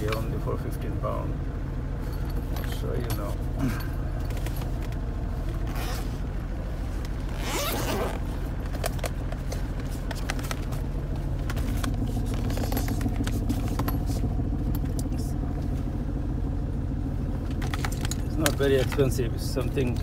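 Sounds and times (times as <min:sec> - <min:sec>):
steady low hum: 0:00.0 - 0:20.0
zip pulled open: 0:05.6 - 0:06.2, 0:07.2 - 0:08.3
clicks and rattles of handling: 0:08.6 - 0:15.2, 0:17.4 - 0:19.2.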